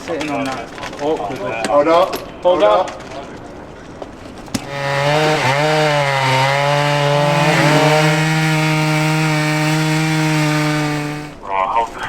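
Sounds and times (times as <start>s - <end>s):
chainsaw cutting wood: 4.3s - 11.4s.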